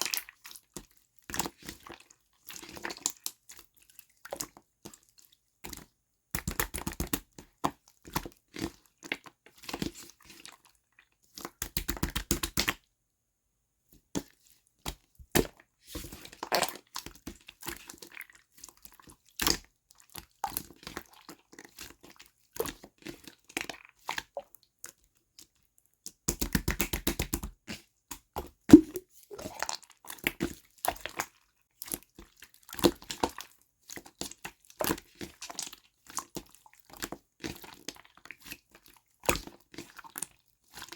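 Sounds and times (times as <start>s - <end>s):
quick slime pops: 28.7s - 29.6s
slime squished by hand: 28.7s - 29.6s.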